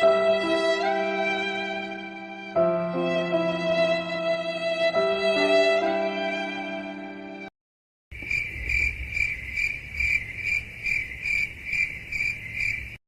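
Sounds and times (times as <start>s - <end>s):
slow violin tune: 0.0s - 7.5s
crickets chirping: 8.2s - 13.0s.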